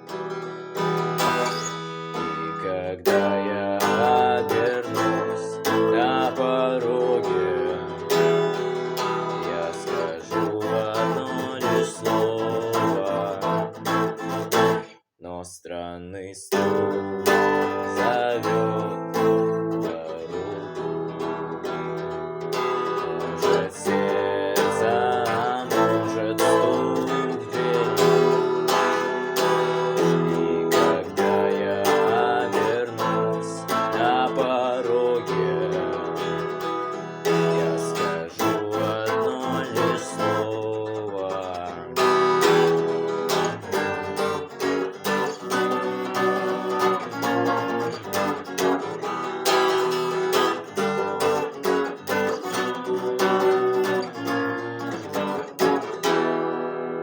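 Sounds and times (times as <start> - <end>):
electric guitar lead: 0.0 - 14.9, 16.5 - 57.0.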